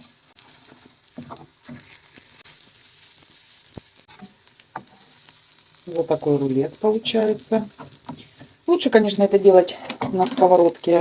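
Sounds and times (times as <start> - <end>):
egg frying in oil: 0.0 - 11.0
fork scraping and tapping pan: 0.7 - 2.0, 4.1 - 5.1, 7.6 - 8.6.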